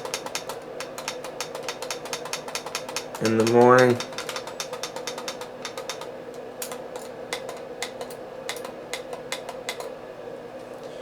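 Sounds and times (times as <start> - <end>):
alarm clock buttons clicking: 0.0 - 6.0.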